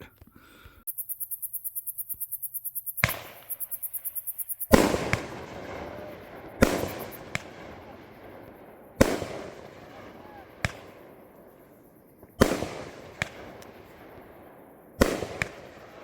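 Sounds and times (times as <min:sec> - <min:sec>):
fireworks reports: 0:02.9 - 0:16.0.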